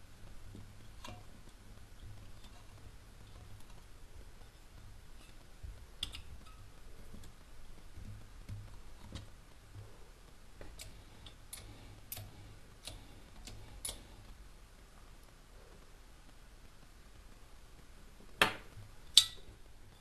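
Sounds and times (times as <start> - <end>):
faint low hum: 0.0 - 20.0
light sharp clicks and taps: 5.2 - 9.9, 10.6 - 14.3.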